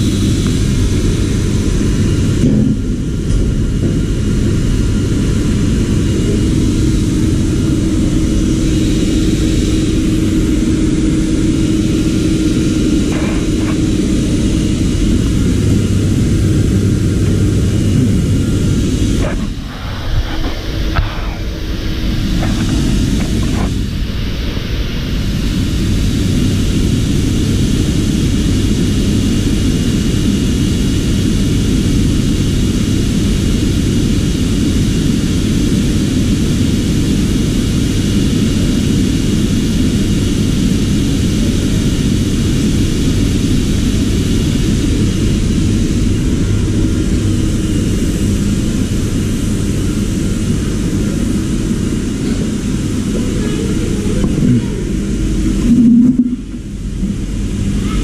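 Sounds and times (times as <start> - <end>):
machine running: 0.0 - 28.4, 49.7 - 57.9
faint high whine: 42.6 - 58.0.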